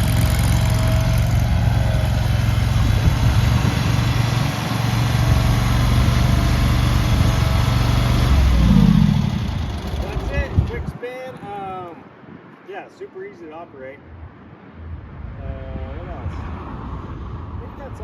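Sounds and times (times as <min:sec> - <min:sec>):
loader engine running: 0:00.0 - 0:10.9.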